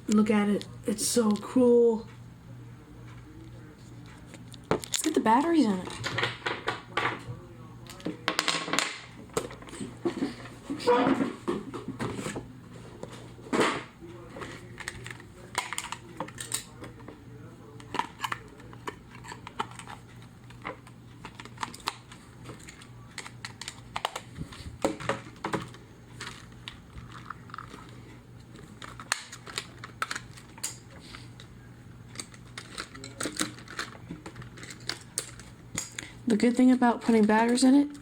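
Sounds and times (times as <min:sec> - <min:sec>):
plastic clicks and rattles: 0:17.8 - 0:27.9, 0:28.5 - 0:30.8, 0:32.1 - 0:36.1.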